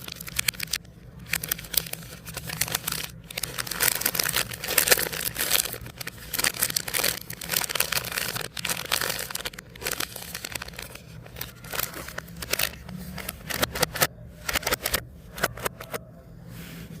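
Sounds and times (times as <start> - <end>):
plastic wrappers crinkling: 0.0 - 16.0.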